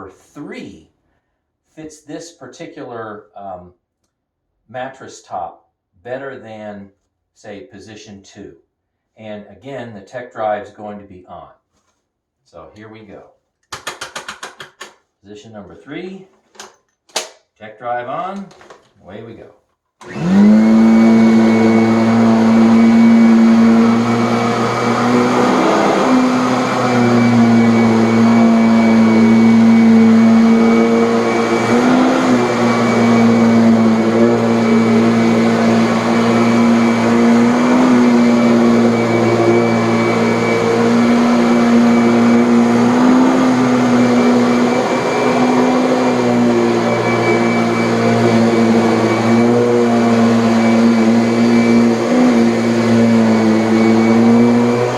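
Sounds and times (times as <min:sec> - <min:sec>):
vacuum cleaner running: 0:20.0 - 0:54.9.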